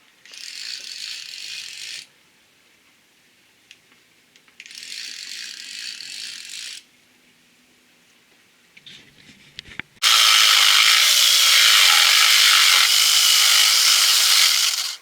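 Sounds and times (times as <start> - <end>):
jigsaw cutting wood: 10.0 - 15.0.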